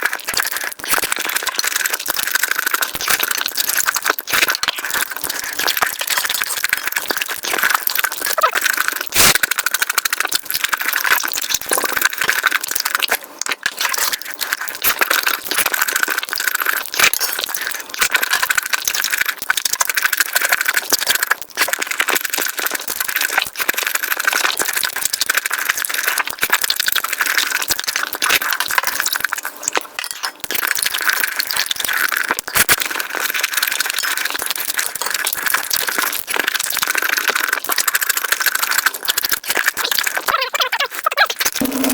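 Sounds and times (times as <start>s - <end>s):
sped up chewing sounds: 0.2s - 28.1s.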